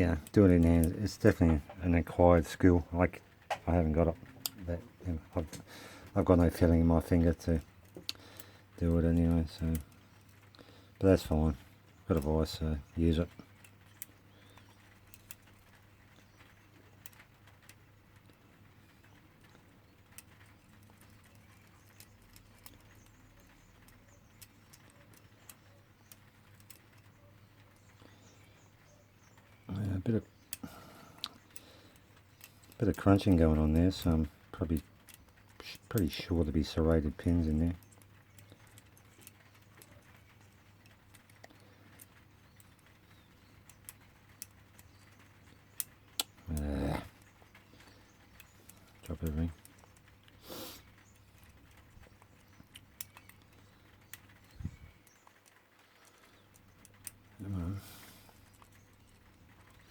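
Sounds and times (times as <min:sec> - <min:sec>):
lock pick clicking and scraping: 0:19.2 - 0:29.7, 0:31.2 - 0:34.2, 0:34.8 - 0:57.4
lock pick clicking in padlock: 0:51.4 - 0:54.2.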